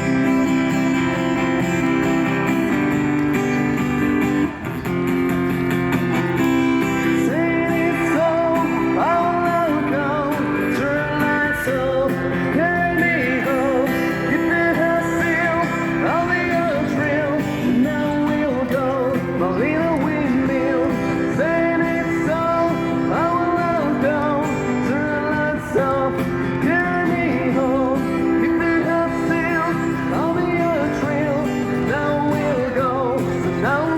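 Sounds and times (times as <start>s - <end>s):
guitar accompaniment: 0.0s - 33.9s
person singing with vibrato: 7.0s - 33.9s.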